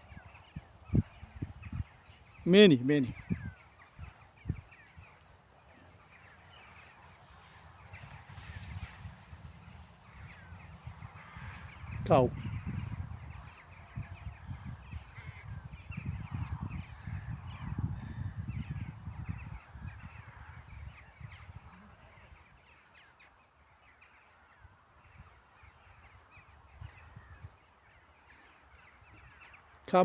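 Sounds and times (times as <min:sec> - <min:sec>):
crows cawing: 0:10.0 - 0:16.0, 0:16.8 - 0:29.8.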